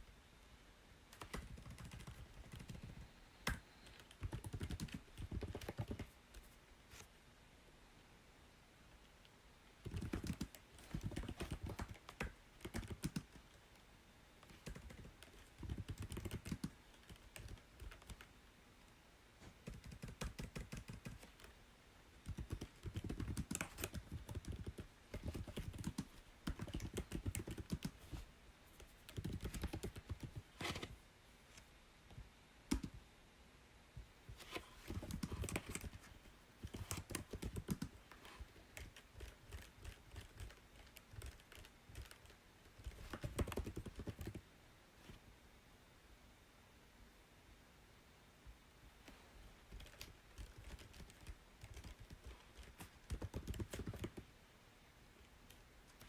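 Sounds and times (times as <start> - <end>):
typing on computer keyboard: 1.1 - 6.1, 9.8 - 13.5, 14.4 - 18.3, 19.6 - 21.5, 22.2 - 28.0, 28.8 - 30.4, 32.7 - 33.0, 34.8 - 44.4, 49.7 - 54.2.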